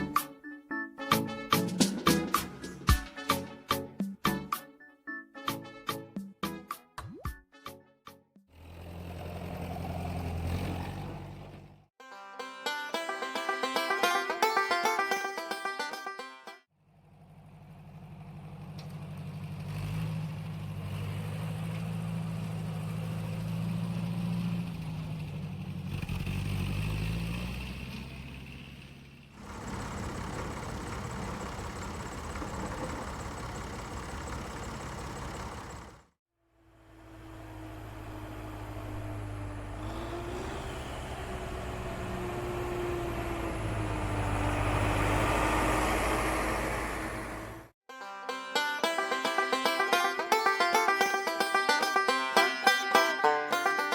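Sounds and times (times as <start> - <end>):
motor humming: 29.4 - 36.0, 37.0 - 43.7.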